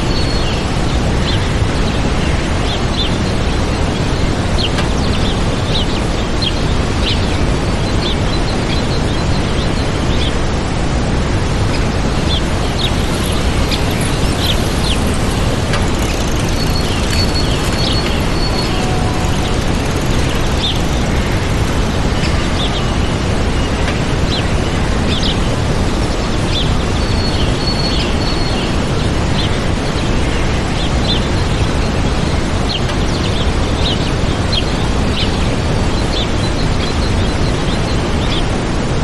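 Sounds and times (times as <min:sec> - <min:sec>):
waterfall rushing: 0:00.0 - 0:39.0
small birds chirping: 0:11.7 - 0:35.4.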